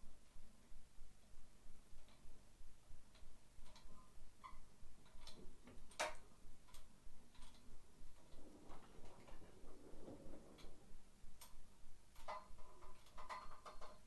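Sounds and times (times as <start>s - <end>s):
faint regular ticking: 1.2s - 14.0s.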